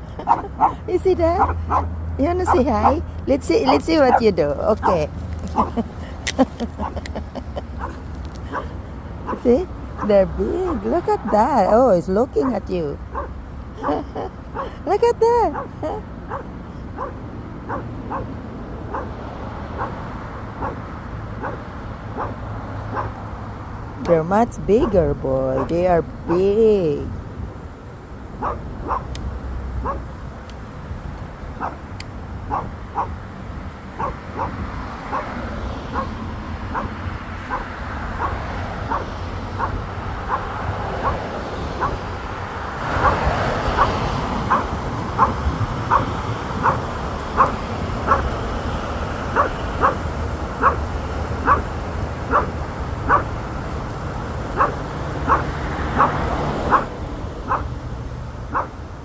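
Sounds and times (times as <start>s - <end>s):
small dog yapping: 29.8s - 30.0s, 35.9s - 41.2s, 49.4s - 50.0s, 50.6s - 50.8s, 51.4s - 51.7s, 52.3s - 52.5s, 53.1s - 53.3s, 54.6s - 56.9s, 57.5s - 57.7s, 58.5s - 58.7s.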